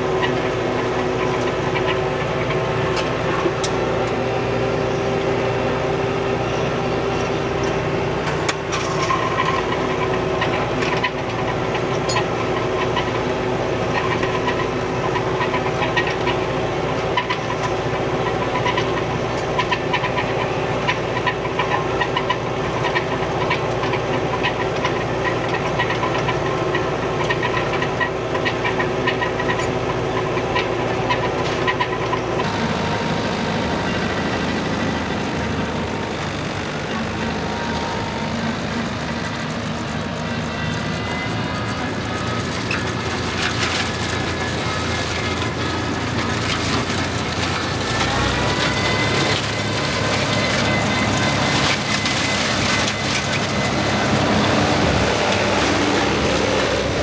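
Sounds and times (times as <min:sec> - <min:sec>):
sharp clicks and rattles: 0:32.4 - 0:48.0
tractor engine running: 0:32.4 - 0:57.0.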